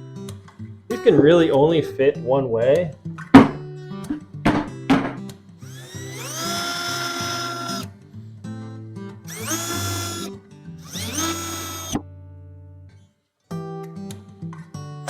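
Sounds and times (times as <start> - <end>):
power drill whining: 5.7 - 7.9, 9.3 - 12.0.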